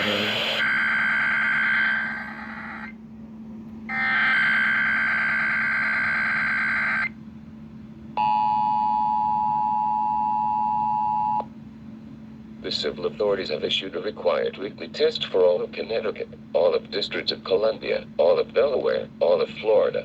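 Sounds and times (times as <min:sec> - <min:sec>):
digital data tone bursts: 0:00.0 - 0:02.9, 0:03.9 - 0:07.1
two-tone attention signal: 0:00.0 - 0:02.9, 0:03.9 - 0:07.1.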